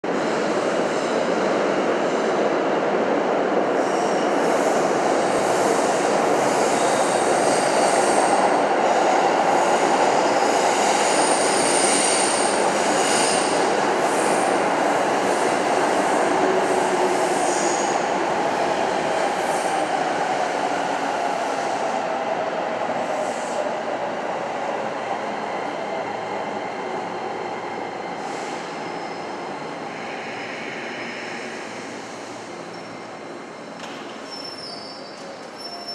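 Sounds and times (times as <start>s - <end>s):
high wheel squeals: 34.2s - 35.9s.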